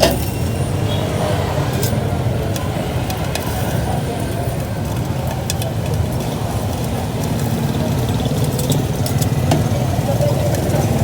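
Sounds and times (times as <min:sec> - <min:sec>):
traffic rumble: 0:00.0 - 0:11.0.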